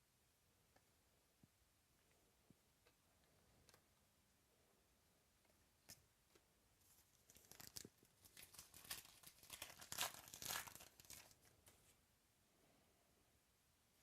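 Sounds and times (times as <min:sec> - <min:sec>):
foil wrapper tearing and crinkling: 0:07.3 - 0:11.6.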